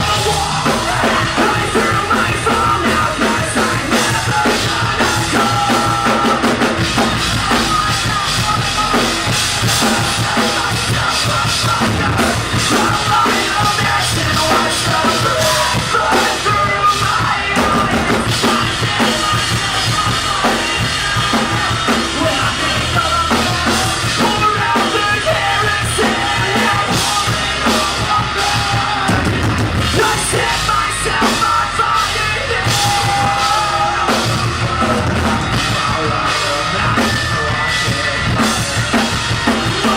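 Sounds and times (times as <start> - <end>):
rock band playing: 0.0 - 39.9
yelled vocals: 0.0 - 39.9.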